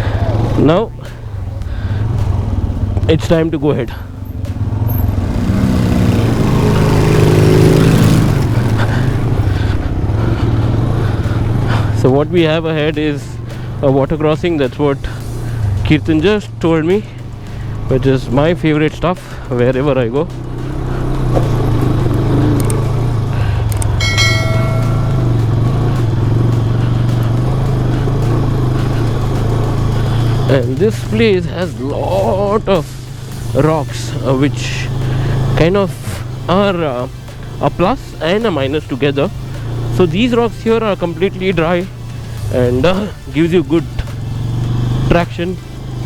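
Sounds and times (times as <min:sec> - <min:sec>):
motorcycle engine pulling away: 0:00.0 - 0:18.5, 0:20.0 - 0:46.0
brief ringing tone: 0:24.0 - 0:25.6.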